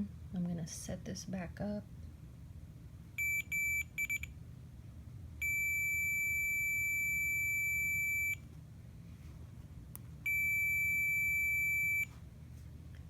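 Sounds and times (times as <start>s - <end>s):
multimeter continuity beeps: 3.2s - 4.3s, 5.4s - 8.4s, 10.3s - 12.1s.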